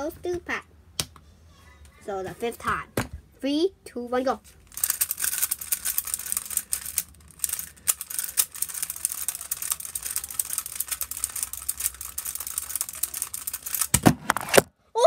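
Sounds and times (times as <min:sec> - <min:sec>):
puzzle cube plastic clicks: 0:04.7 - 0:14.7.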